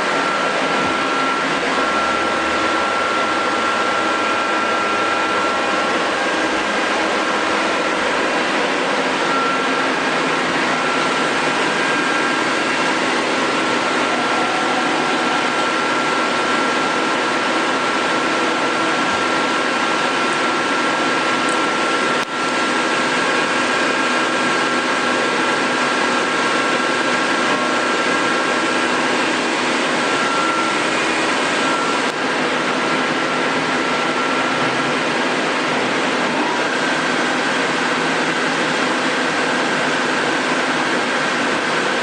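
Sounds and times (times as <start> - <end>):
lathe spindle whirring: 0.0 - 42.0.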